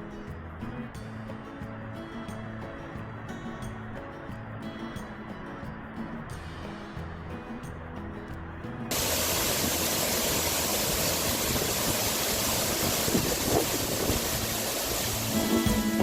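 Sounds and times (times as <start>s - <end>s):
waterfall roaring: 8.9s - 16.0s.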